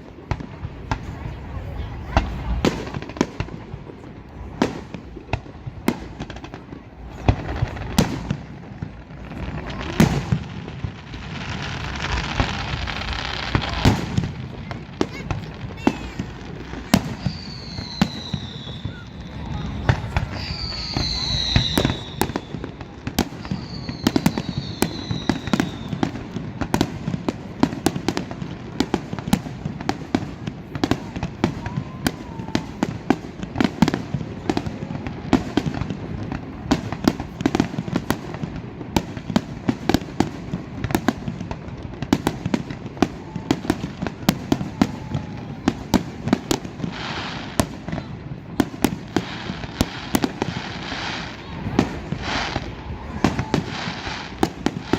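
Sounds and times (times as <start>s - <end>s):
fireworks bangs and pops: 0.0s - 54.9s
falling firework whistles: 15.8s - 26.9s, 30.7s - 35.8s, 48.6s - 54.9s.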